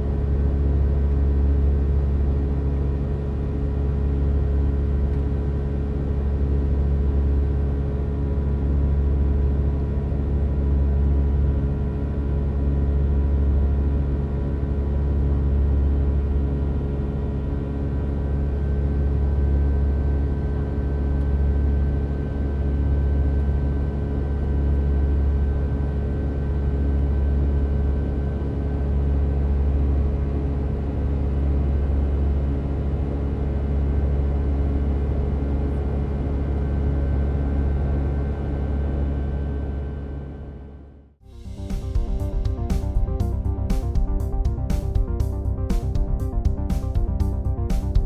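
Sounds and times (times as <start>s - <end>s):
airplane cabin engine rumble: 41.2s - 48.0s.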